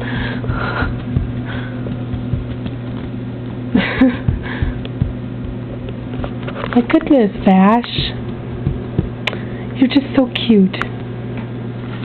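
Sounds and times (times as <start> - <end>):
soft irregular thumps: 0.0 - 3.2, 3.8 - 9.4
low electrical hum: 0.0 - 12.0.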